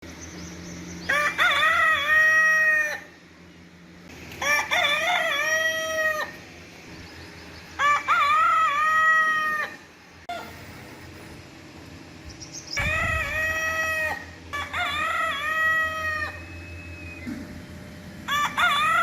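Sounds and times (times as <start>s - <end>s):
rooster crowing: 1.0s - 3.2s, 4.4s - 6.4s, 7.8s - 10.6s, 12.8s - 17.1s, 18.2s - 19.0s.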